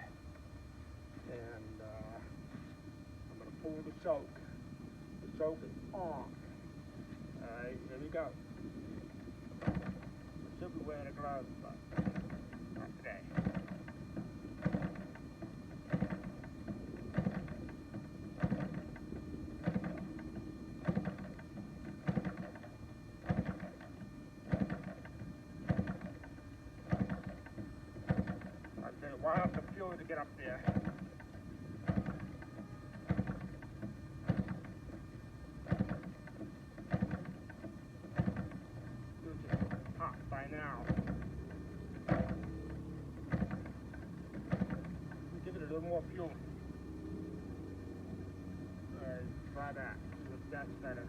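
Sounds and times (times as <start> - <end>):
engine clattering through compression: 9.2 - 46.4
engine flipped over by hand: 30.6 - 38.6, 39.5 - 40.0, 42.0 - 42.6, 43.2 - 45.2.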